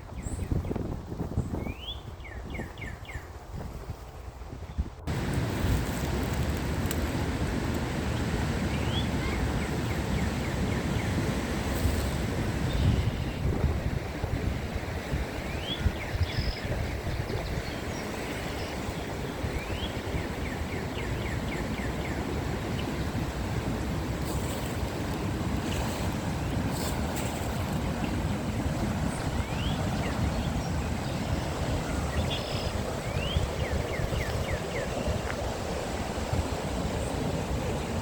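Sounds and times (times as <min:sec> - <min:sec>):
bird chirps: 0:32.1 - 0:34.9.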